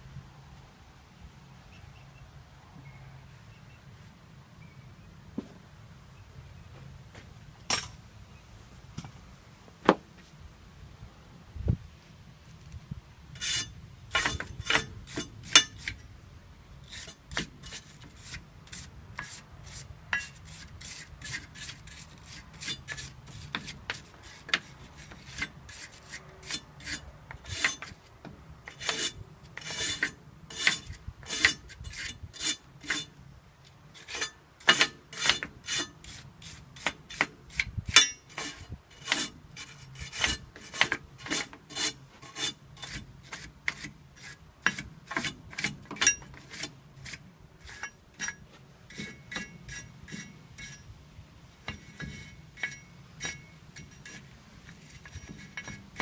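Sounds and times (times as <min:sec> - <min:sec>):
hand filing strokes on metal: 0:16.9 - 0:28.0, 0:28.7 - 0:33.1, 0:34.0 - 0:50.8, 0:51.7 - 0:56.0.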